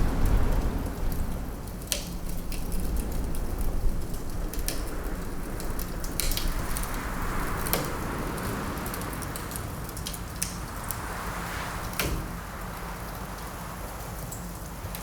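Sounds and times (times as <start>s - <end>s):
wind rushing: 0.0s - 14.2s
wood fire crackling and popping: 0.0s - 15.0s.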